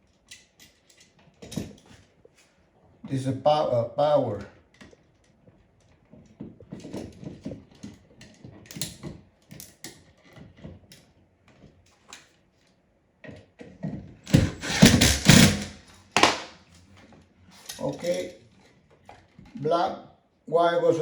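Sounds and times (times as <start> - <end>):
clattering: 14.3 - 16.5.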